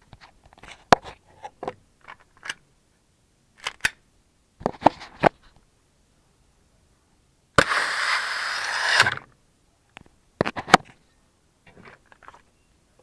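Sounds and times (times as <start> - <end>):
hiss: 7.6 - 9.1.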